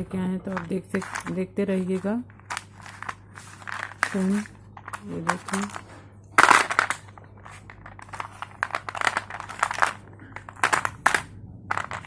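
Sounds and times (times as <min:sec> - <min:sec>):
slate pencil crunching: 0:00.9 - 0:05.8.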